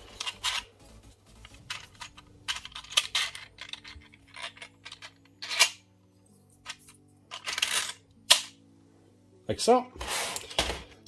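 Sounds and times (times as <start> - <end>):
plastic puzzle pieces clicking: 1.7 - 5.7.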